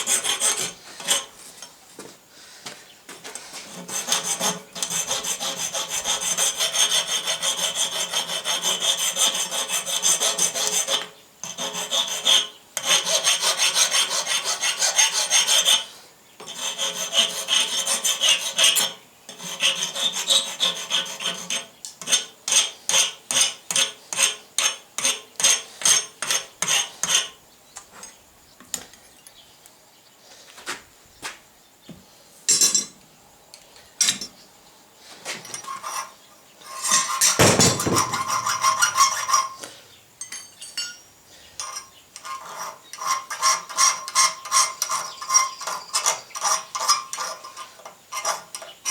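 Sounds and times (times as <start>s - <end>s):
file rasping on metal: 0.0s - 1.3s, 3.6s - 27.4s, 35.6s - 39.6s, 41.6s - 48.9s.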